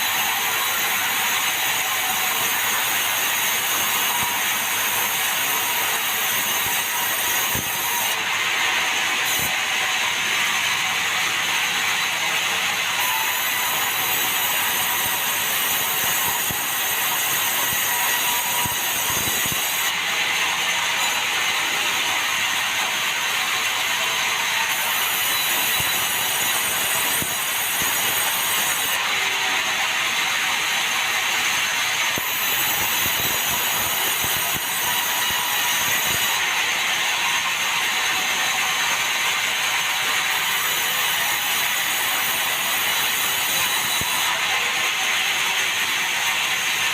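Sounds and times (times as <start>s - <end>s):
sawmill saw cutting wood: 0.0s - 46.9s.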